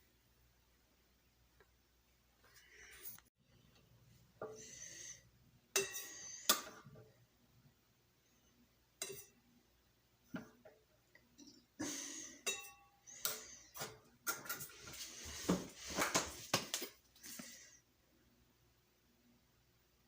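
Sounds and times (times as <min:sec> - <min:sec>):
kitchenware clinking: 0:05.7 - 0:07.0, 0:09.0 - 0:09.4, 0:12.4 - 0:14.8.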